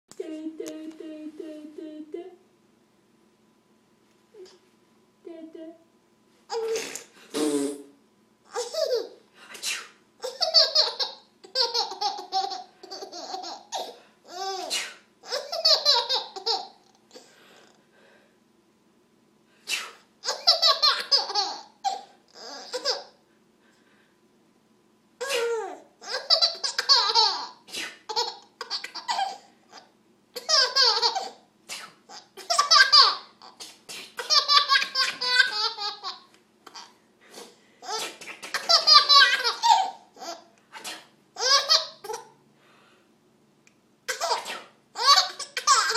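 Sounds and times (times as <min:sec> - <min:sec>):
baby laughing: 0:06.5 - 0:07.1, 0:08.5 - 0:09.2, 0:10.2 - 0:17.3, 0:20.2 - 0:23.2, 0:25.2 - 0:31.5, 0:32.1 - 0:33.6, 0:34.2 - 0:37.0, 0:37.8 - 0:40.5, 0:41.4 - 0:42.4, 0:44.1 - 0:45.9.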